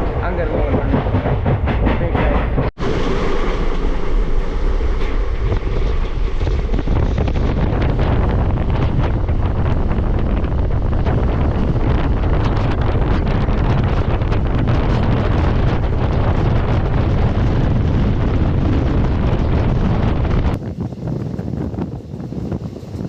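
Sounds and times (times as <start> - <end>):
moving train rumble: 0.0 - 23.0
wind buffeting microphone: 0.0 - 23.0.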